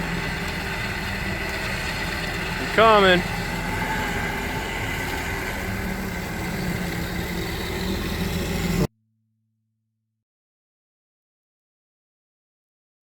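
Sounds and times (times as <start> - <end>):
steady hiss: 0.0 - 8.9
vehicle engine running: 0.0 - 8.9.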